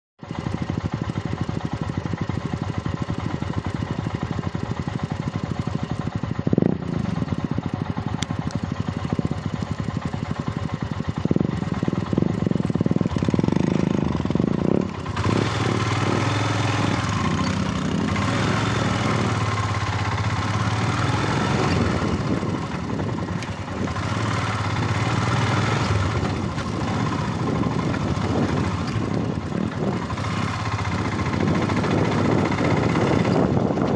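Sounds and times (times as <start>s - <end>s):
motorcycle engine running: 0.2s - 33.9s.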